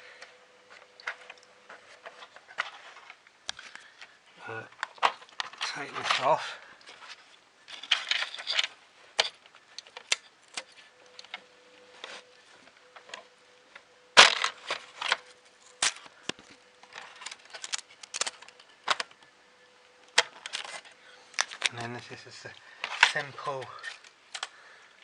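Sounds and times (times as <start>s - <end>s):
faint steady hum: 0.0s - 25.0s
rustling and clatter: 0.1s - 19.2s, 20.2s - 24.6s.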